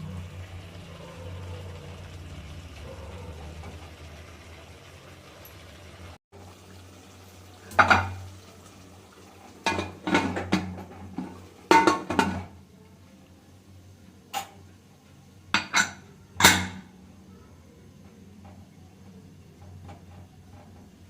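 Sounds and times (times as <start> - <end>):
dishes and utensils clattering: 7.7 - 8.2, 9.6 - 12.6, 14.3 - 14.6, 15.5 - 17.0.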